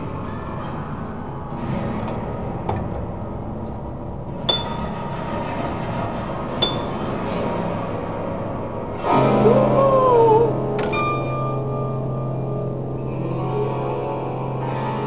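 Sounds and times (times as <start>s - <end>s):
low drone: 3.4s - 15.0s
metallic strikes on piano strings: 4.4s - 9.5s
sustained wavering piano tone: 7.8s - 15.0s.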